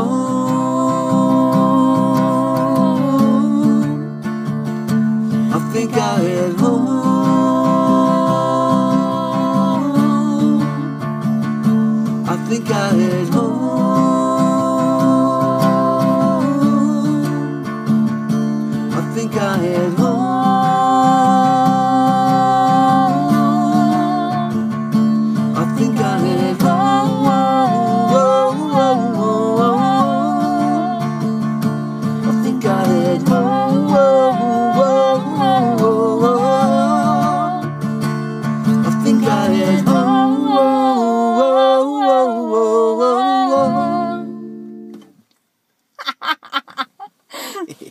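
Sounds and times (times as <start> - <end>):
person singing wordless melody: 0.0 - 4.3, 5.2 - 11.0, 11.9 - 17.9, 18.7 - 37.8, 38.6 - 45.0
acoustic guitar strumming: 0.0 - 45.2.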